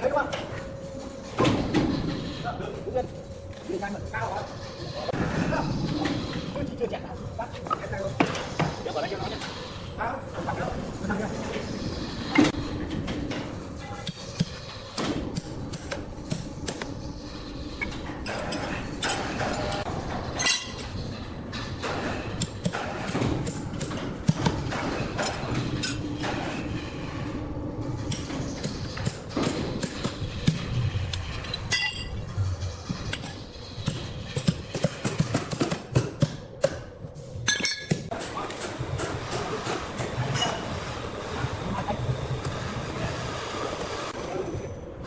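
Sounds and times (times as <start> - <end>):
workshop background noise: 0.0 - 45.0
knocks and clinks of sawmill work: 12.3 - 42.7.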